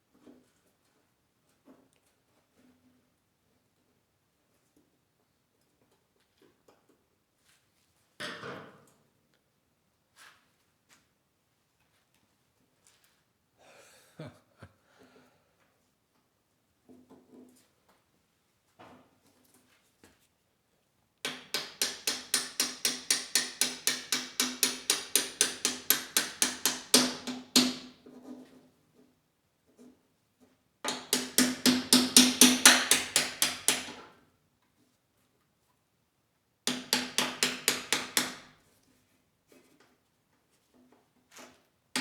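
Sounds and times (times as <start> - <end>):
hammer tapping metal pin: 21.3 - 27.8, 30.9 - 33.9.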